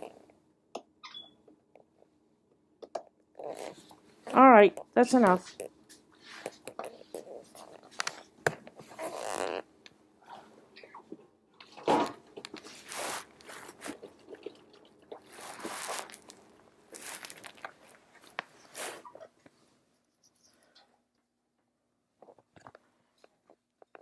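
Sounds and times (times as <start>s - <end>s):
rustling and crinkling: 11.1s - 20.8s.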